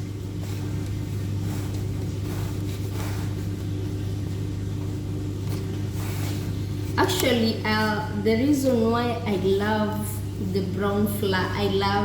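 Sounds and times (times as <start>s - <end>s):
hands kneading dough: 0.0s - 7.9s
appliance humming: 0.0s - 12.0s.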